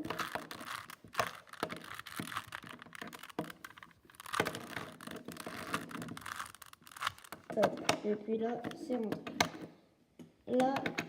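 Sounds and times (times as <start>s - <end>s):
puzzle cube plastic clicks: 0.0s - 8.0s.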